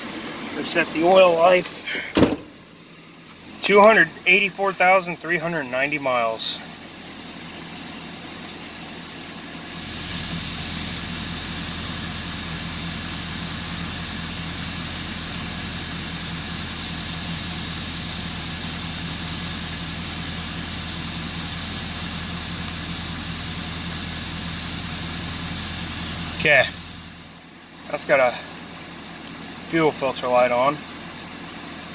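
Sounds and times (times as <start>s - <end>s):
truck engine idling: 0.0s - 31.9s.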